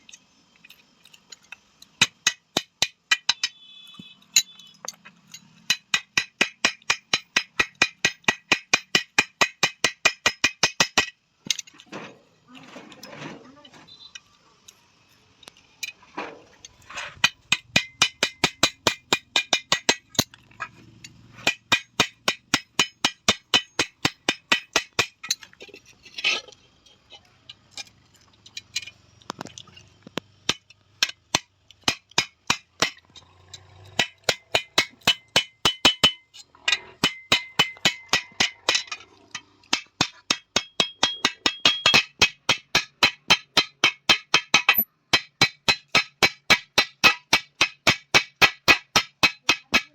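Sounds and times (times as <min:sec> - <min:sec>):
hammer clanging on metal: 0:02.0 - 0:11.6, 0:21.4 - 0:25.4, 0:33.6 - 0:39.0, 0:39.7 - 0:49.9.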